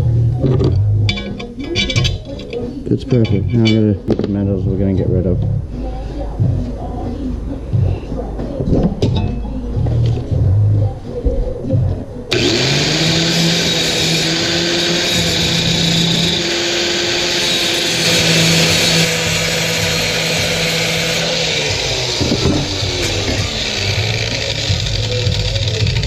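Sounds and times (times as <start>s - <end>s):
electric grinder cutting metal: 12.3s - 26.0s.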